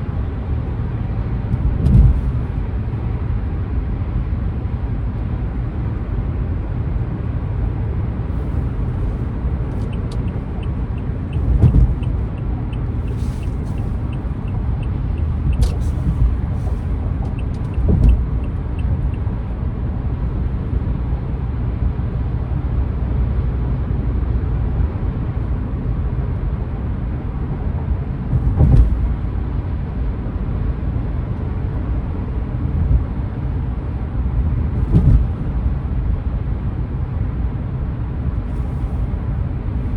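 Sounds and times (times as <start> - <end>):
car engine and road rumble: 0.0 - 39.9
heavy thumps: 11.3 - 14.8, 15.5 - 18.5, 34.8 - 35.4.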